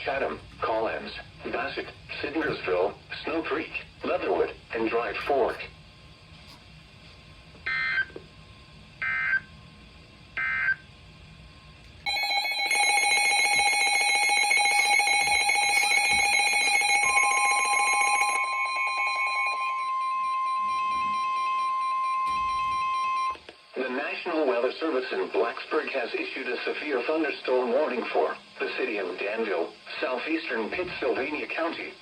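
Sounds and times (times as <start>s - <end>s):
pulsing electronic alarm: 7.7s - 8.1s, 9.0s - 9.5s, 10.4s - 10.8s, 12.1s - 23.4s
alert data tone bursts: 12.1s - 23.4s.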